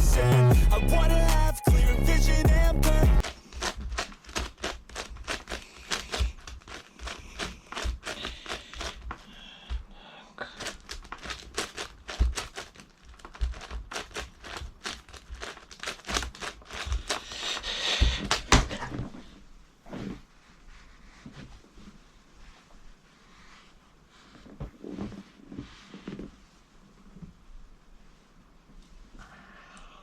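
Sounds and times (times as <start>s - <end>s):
puzzle cube clicking and rattling: 3.2s - 9.2s, 10.6s - 18.5s.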